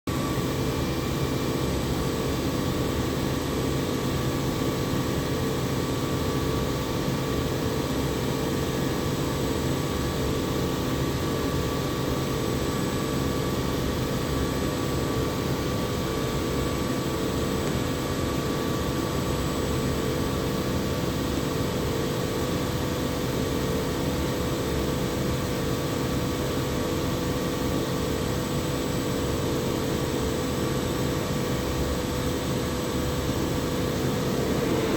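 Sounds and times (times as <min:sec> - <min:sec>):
air compressor running: 0:30.7 - 0:34.9
steady machine tones: 0:32.5 - 0:34.9.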